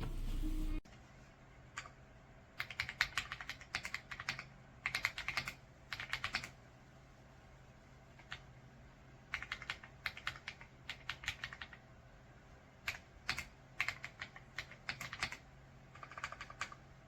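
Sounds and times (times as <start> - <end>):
mechanical keyboard typing: 2.6 - 6.6, 9.3 - 11.8, 12.8 - 16.8.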